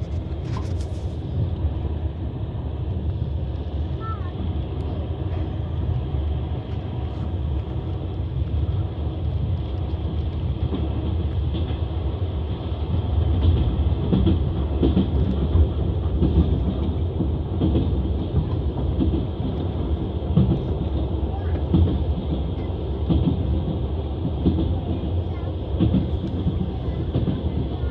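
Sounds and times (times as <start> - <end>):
train wheels rumbling on rails: 0.0 - 27.9.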